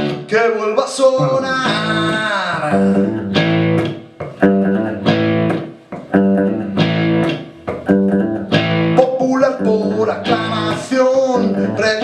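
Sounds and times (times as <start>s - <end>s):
person singing: 0.0s - 3.4s, 9.0s - 12.0s
strummed electric guitar chords: 0.0s - 12.0s.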